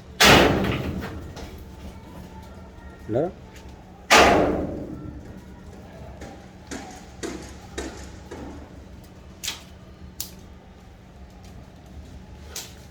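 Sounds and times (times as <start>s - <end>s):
sharp knocks and clicks: 6.2s - 8.7s.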